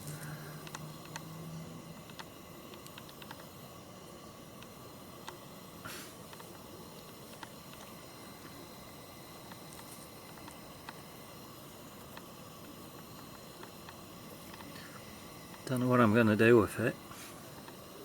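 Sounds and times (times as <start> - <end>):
steady background hiss: 0.0 - 18.0.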